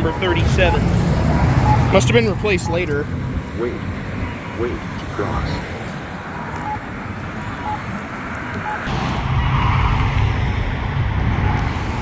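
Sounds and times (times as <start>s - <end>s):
crosswalk button beeping: 0.0s - 8.9s
road traffic: 0.0s - 12.0s.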